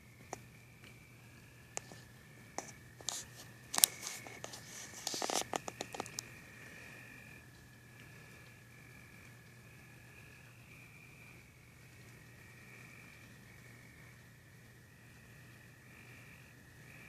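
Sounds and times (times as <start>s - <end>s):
crickets trilling: 0.0s - 17.0s
scratchy rustling: 1.8s - 6.2s
sharp clicks: 2.6s - 6.3s.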